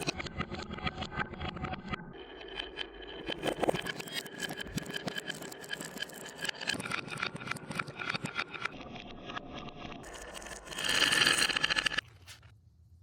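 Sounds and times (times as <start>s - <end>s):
marbles clacking down wooden run: 10.1s - 12.0s
marbles rattling rush: 10.1s - 12.0s.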